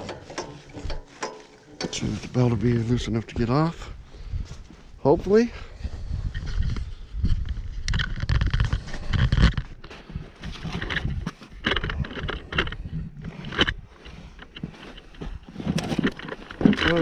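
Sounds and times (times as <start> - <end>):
metal tools knocking and scraping: 0.0 - 2.2.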